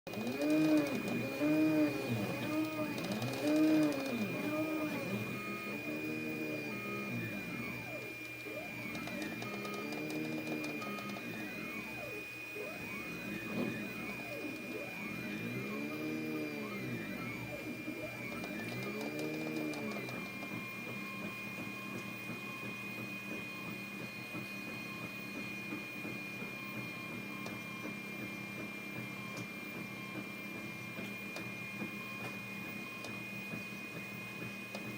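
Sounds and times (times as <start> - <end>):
stepper motors whining: 0.1 - 28.4.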